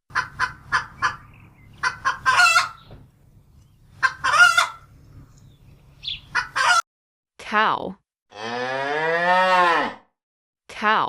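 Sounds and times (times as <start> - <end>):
hen clucking and squawking: 0.1 - 3.0, 3.7 - 6.8.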